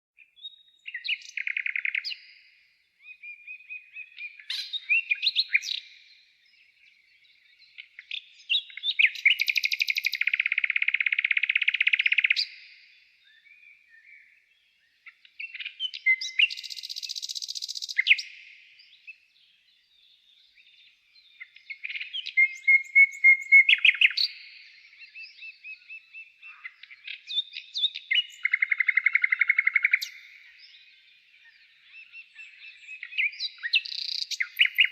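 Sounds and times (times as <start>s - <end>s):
songbird singing: 0.2s - 34.9s.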